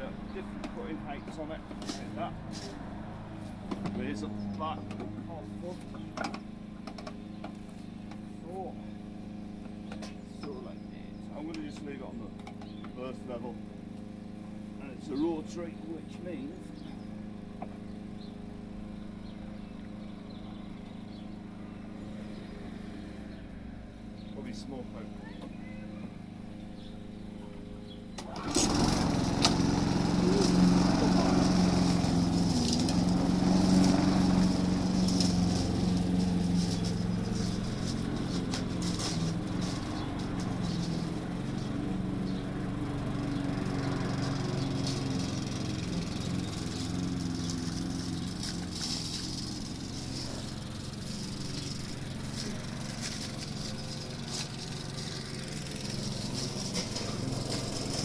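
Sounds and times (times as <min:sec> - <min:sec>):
lawnmower engine running: 0:00.0 - 0:58.0.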